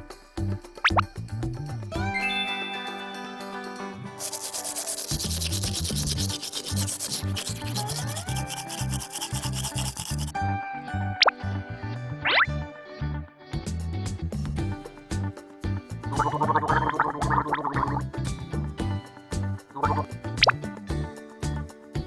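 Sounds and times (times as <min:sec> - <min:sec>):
light background music: 0:00.0 - 0:22.0
rapid scrubbing strokes: 0:04.2 - 0:10.3.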